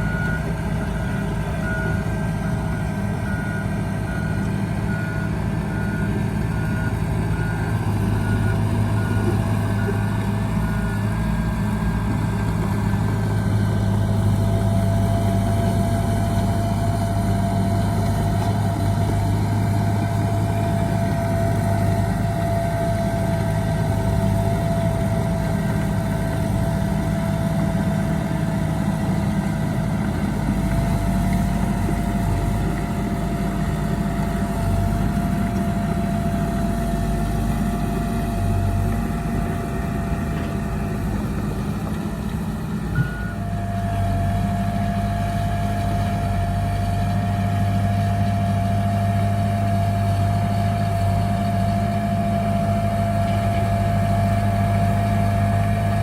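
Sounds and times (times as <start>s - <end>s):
reversing alarm beeping: 0.0s - 11.6s, 42.9s - 44.2s
diesel machinery whining: 0.0s - 56.0s.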